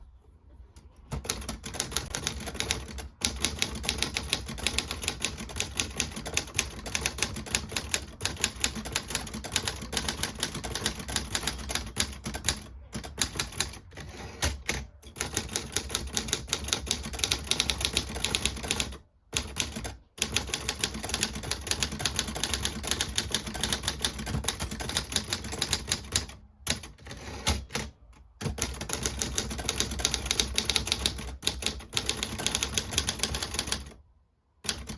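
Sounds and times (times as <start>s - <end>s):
manual typewriter typing: 1.0s - 34.0s, 34.6s - 34.9s.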